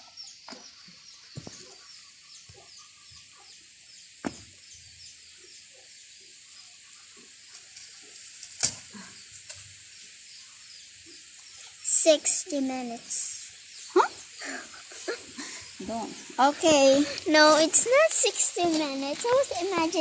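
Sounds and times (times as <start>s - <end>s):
sharp knocks: 4.2s - 4.5s.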